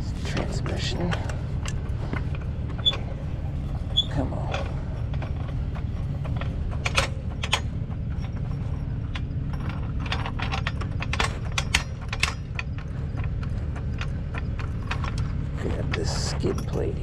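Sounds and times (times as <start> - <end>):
engine idling hum: 0.0 - 17.0.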